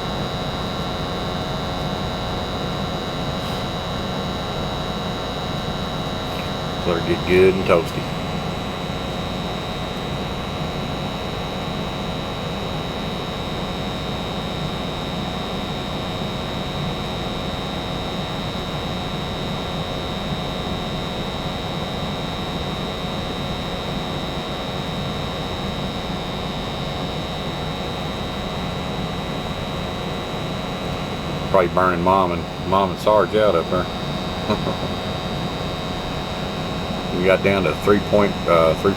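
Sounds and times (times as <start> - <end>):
thin high whine: 0.0 - 12.3, 25.9 - 38.9
furnace fan hum: 0.0 - 38.9.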